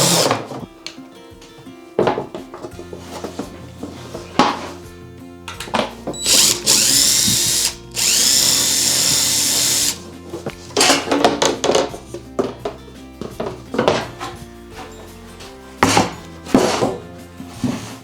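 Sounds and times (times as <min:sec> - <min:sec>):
power tool motor spinning: 0:00.0 - 0:00.4, 0:06.2 - 0:10.0
background music: 0:00.0 - 0:18.0.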